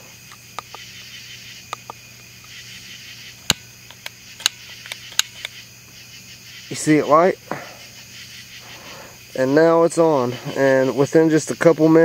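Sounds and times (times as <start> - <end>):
insects chirping: 0.0 - 12.0
piezo igniter clicking: 0.2 - 2.6, 3.4 - 5.6.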